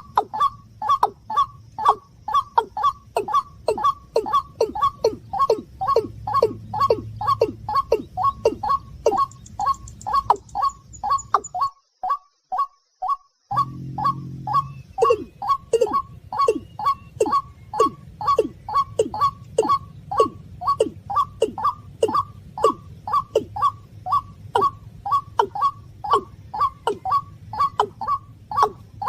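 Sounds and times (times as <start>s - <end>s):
rail bird calls: 0.0s - 29.0s
short low buzz: 13.5s - 16.3s
low hum: 13.5s - 29.0s.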